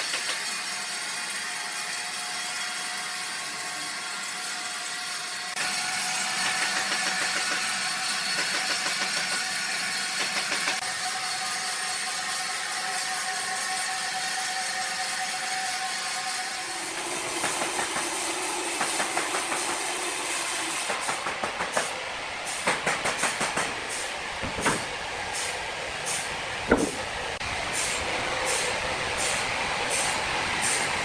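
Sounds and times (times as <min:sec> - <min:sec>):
sawmill machinery humming: 0:00.0 - 0:31.0
wood and metal clattering: 0:26.7 - 0:27.1.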